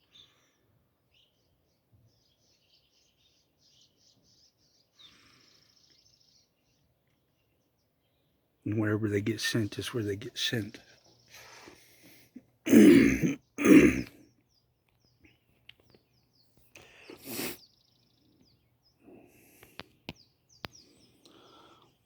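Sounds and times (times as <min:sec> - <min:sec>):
man coughing: 0:12.7 - 0:14.2.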